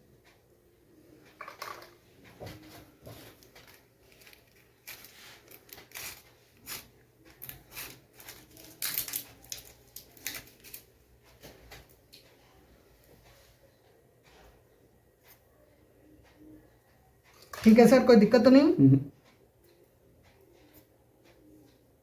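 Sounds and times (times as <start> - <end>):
rustling of handled objects: 1.1 - 12.4
small objects clicking and tapping: 1.3 - 2.0, 3.3 - 12.3.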